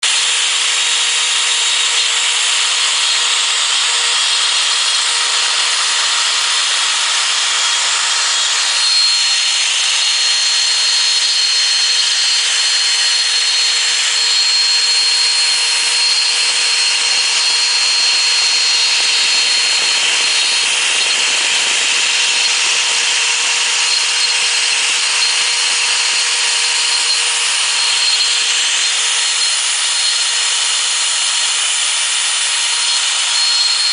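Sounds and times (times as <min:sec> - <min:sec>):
router spindle cutting wood: 0:00.0 - 0:33.9.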